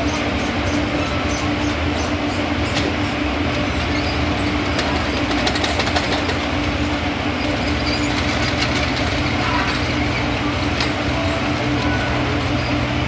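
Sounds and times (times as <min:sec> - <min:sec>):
railway machinery engine drone: 0:00.0 - 0:13.0.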